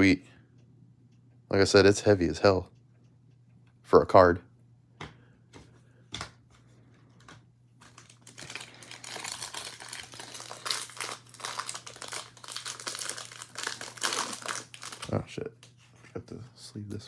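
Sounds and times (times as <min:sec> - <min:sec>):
plastic packaging crinkling: 0:07.8 - 0:15.2.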